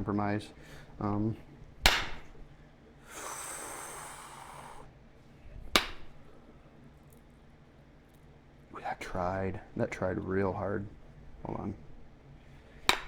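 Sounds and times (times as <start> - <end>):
soft steady hiss: 0.0 - 13.0
stone knapping strikes: 1.8 - 2.3, 5.8 - 6.2.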